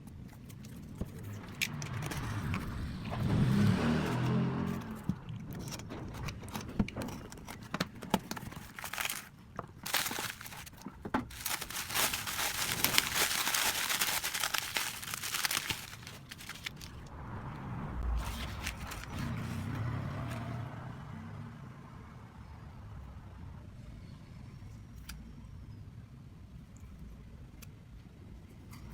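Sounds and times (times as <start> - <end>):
plastic packaging crinkling: 7.5 - 17.1, 18.2 - 19.5.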